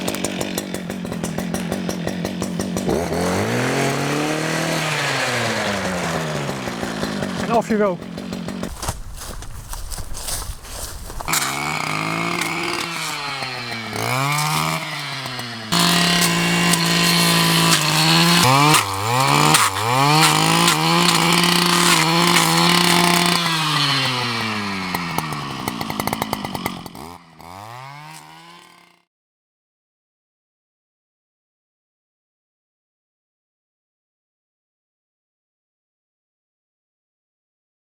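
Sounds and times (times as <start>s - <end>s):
brush cutter engine revving: 0.0s - 29.0s.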